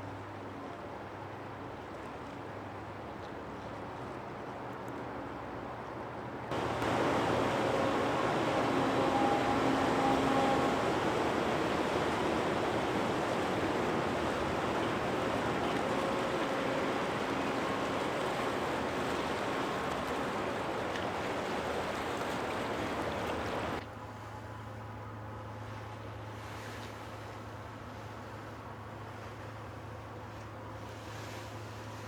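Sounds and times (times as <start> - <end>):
rushing water: 6.5 - 23.8.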